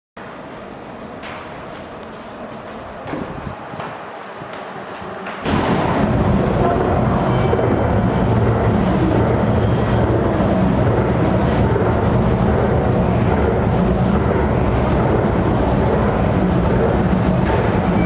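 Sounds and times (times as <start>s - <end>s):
escalator mechanical rumble: 5.2s - 18.0s.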